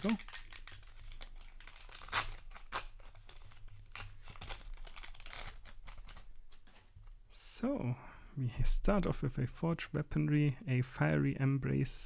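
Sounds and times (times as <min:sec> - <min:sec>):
wrapper crinkling and tearing: 0:00.0 - 0:06.9.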